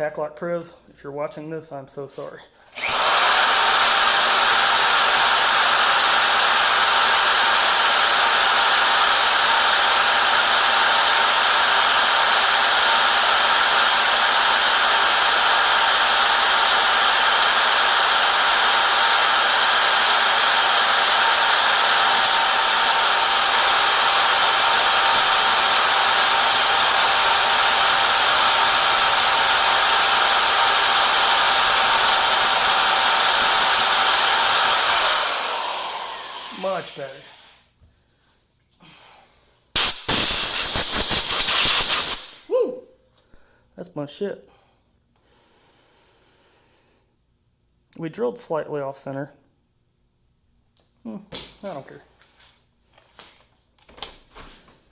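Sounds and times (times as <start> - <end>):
power drill whining: 2.7 - 37.7.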